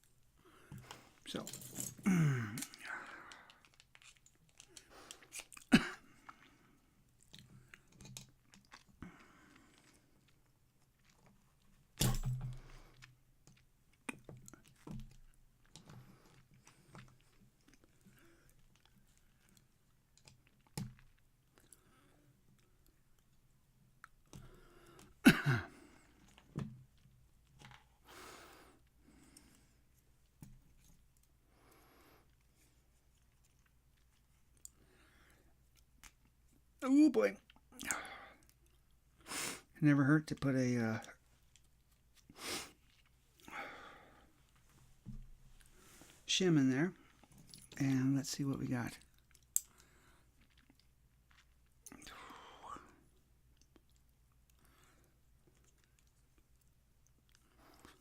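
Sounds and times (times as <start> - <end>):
person sighing: 2.0 - 3.6.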